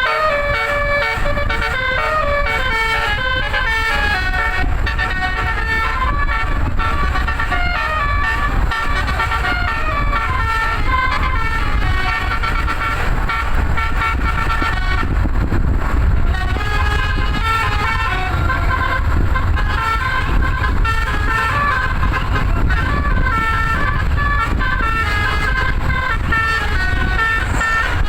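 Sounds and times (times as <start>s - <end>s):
bus engine rumbling: 0.0s - 28.0s
musical air horn playing a tune: 0.0s - 28.0s.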